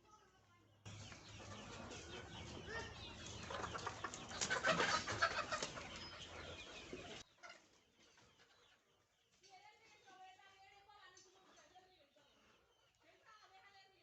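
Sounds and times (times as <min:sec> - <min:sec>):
chickens clucking: 0:00.9 - 0:09.4.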